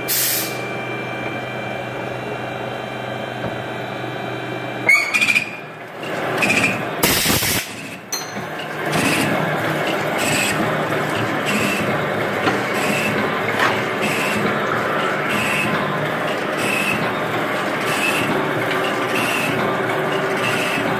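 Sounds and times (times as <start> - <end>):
tapping machine running: 5.1 - 20.9.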